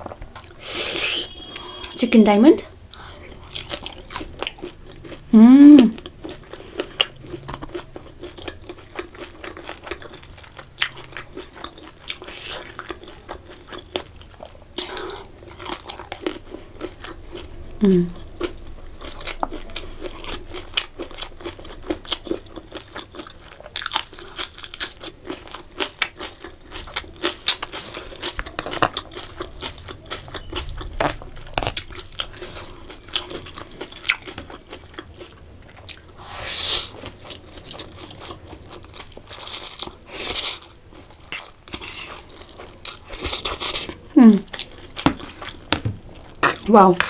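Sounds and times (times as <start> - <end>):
crunching and chewing fried chicken: 0.0 - 2.0, 2.6 - 5.4, 6.0 - 36.2, 37.0 - 47.0.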